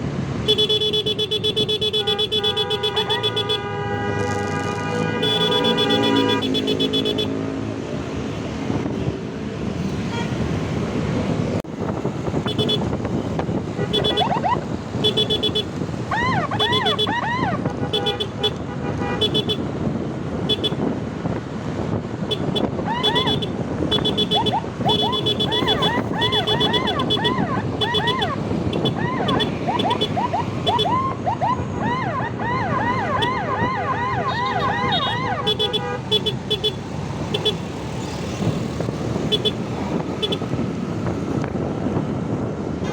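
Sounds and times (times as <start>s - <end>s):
road and wind noise: 0.0s - 42.9s
vehicle horn: 0.4s - 7.6s, 12.4s - 13.0s, 13.6s - 15.8s, 16.6s - 19.7s, 20.4s - 20.9s, 22.3s - 30.9s, 34.2s - 37.6s, 39.3s - 39.6s
electronic siren yelping: 14.0s - 17.7s, 22.8s - 23.5s, 24.2s - 35.7s.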